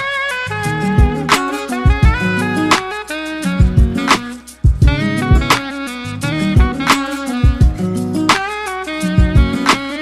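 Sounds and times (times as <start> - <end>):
jazzy instrumental music: 0.0 - 10.0
drum hits: 1.0 - 2.9, 3.6 - 5.7.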